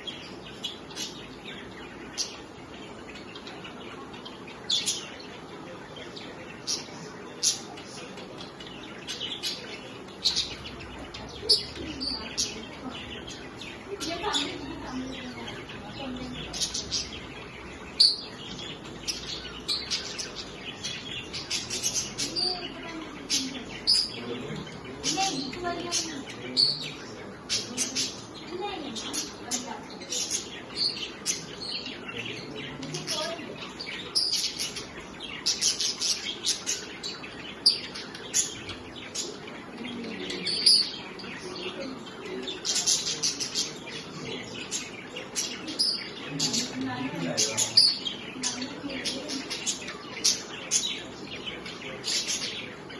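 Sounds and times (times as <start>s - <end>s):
budgies chirping and warbling: 0.0s - 52.9s.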